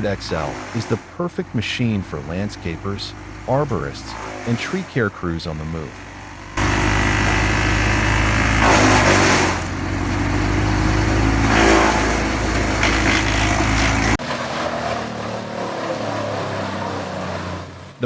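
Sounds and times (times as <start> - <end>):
machine drone: 0.0 - 17.9
wood chipper engine running: 0.0 - 18.0
chipping noise rushes: 11.5 - 15.1.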